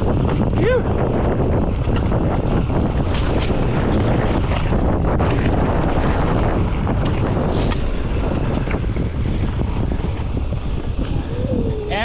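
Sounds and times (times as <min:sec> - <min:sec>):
wind rushing over microphone: 0:00.0 - 0:12.0.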